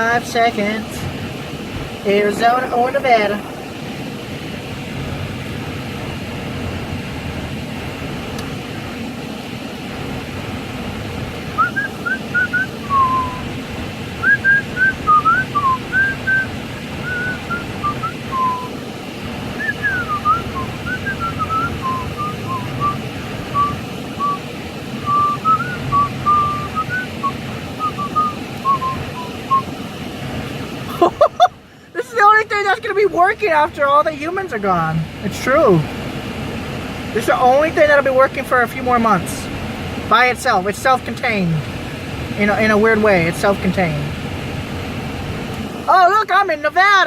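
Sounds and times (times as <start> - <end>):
low background rumble: 0.0 - 47.0
person whistling a tune: 11.6 - 13.4, 14.2 - 18.7, 19.6 - 24.4, 25.1 - 29.7.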